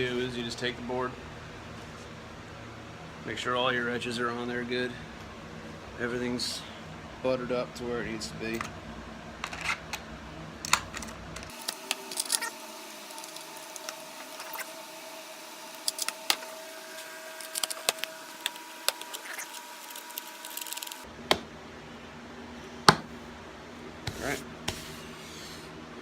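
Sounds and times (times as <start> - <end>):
faint background hum: 0.0 - 26.0.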